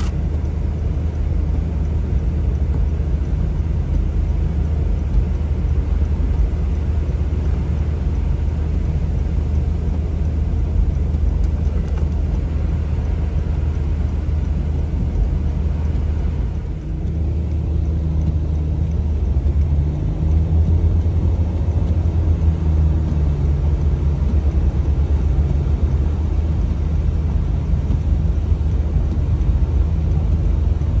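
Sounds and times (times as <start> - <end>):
faint engine hum: 0.0 - 31.0
vehicle engine and road rumble: 0.0 - 31.0.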